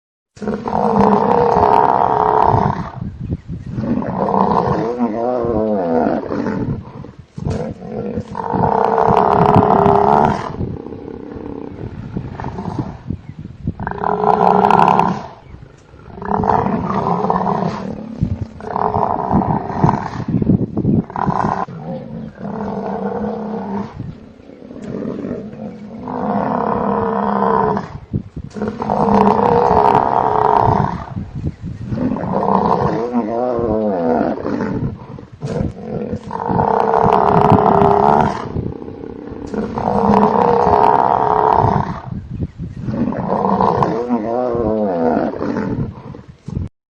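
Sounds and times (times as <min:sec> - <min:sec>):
buffalo grunting: 0:03.8 - 0:13.2, 0:13.8 - 0:20.4, 0:21.0 - 0:42.2, 0:42.8 - 0:46.7
buffalo bellowing: 0:32.0 - 0:42.1.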